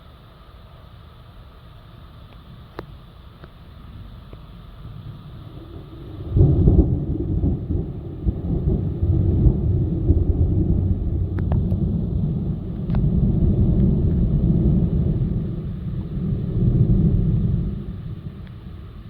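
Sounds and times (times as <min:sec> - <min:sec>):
thunder rumbling: 0:03.8 - 0:19.0
thunder crack: 0:04.9 - 0:19.0.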